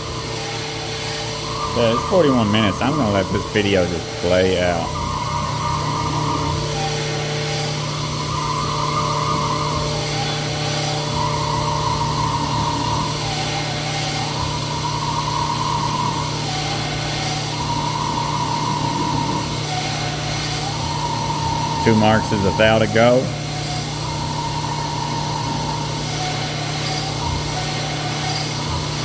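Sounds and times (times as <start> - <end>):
steady motor hum: 0.0 - 29.0.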